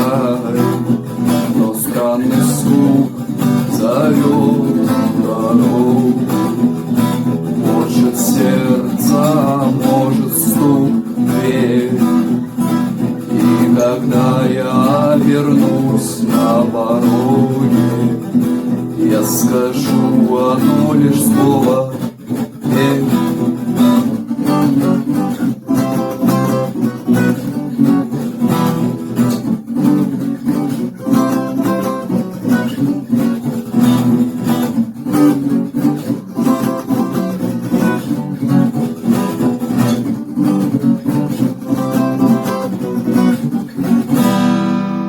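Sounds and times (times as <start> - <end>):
acoustic guitar strumming: 0.0 - 45.0.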